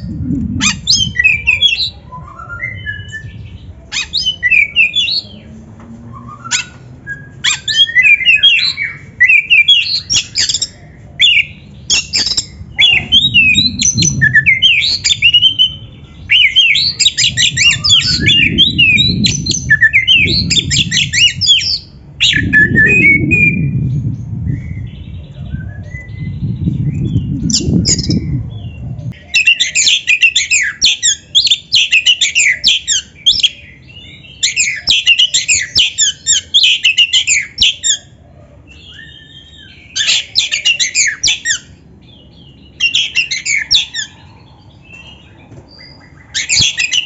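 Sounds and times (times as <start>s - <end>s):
low background rumble: 0.0s - 4.0s, 10.7s - 29.3s
songbird singing: 0.0s - 47.0s.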